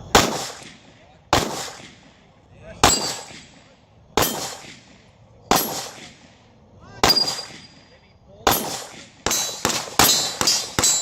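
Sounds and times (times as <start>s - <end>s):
pistol shots with echo: 0.0s - 2.1s, 2.8s - 3.6s, 4.2s - 6.2s, 7.0s - 7.8s, 8.4s - 11.0s.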